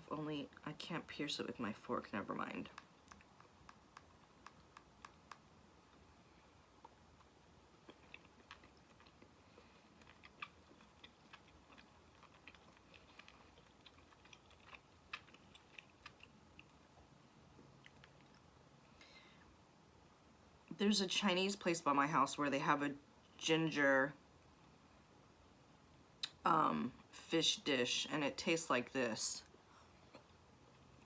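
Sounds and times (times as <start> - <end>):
chewing: 2.6 - 6.1, 6.7 - 18.5.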